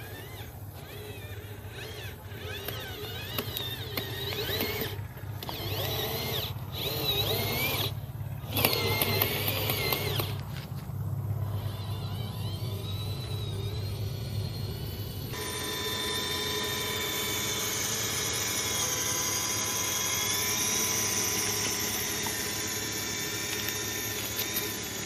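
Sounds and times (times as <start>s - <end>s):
electric motor whining: 0.0s - 25.0s.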